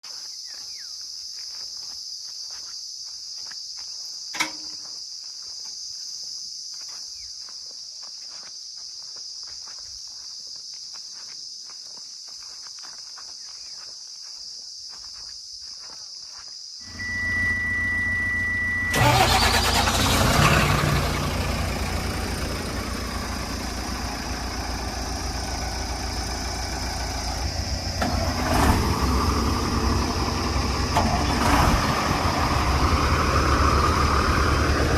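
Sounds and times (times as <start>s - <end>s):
single click: 4.4s - 4.8s
steady high beep: 16.8s - 19.0s
heavy diesel engine running: 16.9s - 34.9s.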